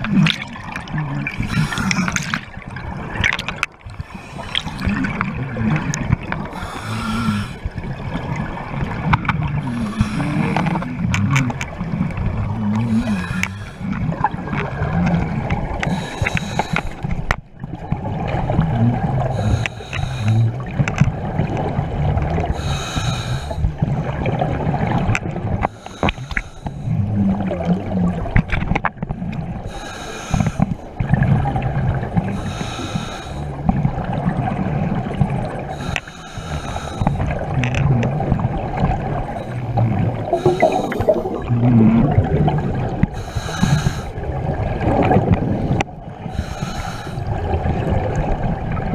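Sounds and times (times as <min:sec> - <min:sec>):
exhaled bubbles rushing: 0:00.0 - 0:16.1, 0:37.2 - 0:43.2
low rumble of rushing water: 0:00.0 - 0:48.9.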